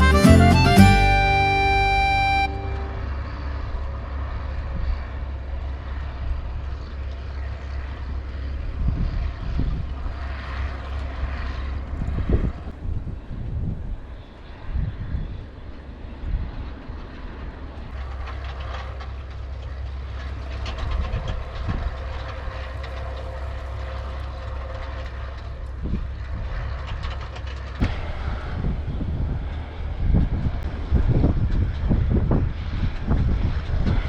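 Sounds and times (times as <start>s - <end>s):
tractor engine droning: 0.0s - 3.9s.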